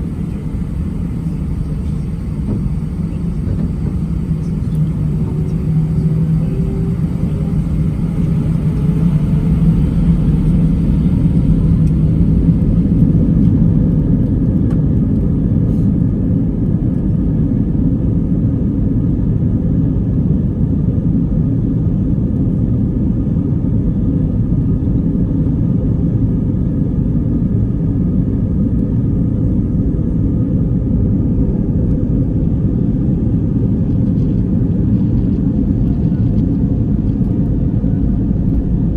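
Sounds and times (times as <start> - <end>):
faint steady hum: 0.0 - 14.8
jet engine rumble in cabin: 0.0 - 38.9.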